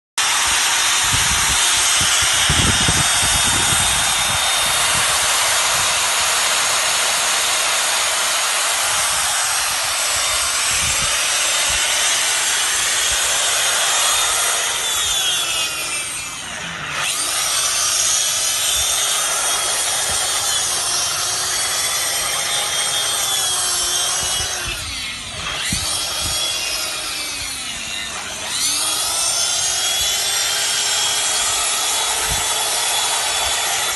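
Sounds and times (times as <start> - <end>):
electric grinder whining: 0.2 - 33.9.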